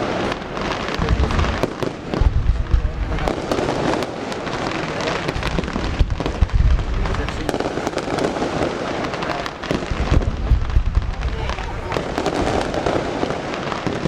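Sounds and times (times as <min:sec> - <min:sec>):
fireworks crackling bangs and pops: 0:00.0 - 0:14.0
low booms of fireworks shells: 0:00.0 - 0:14.0.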